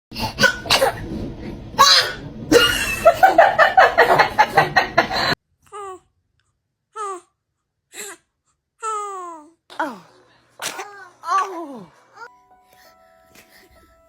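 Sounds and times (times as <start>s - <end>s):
baby sneezing: 9.8s - 11.9s.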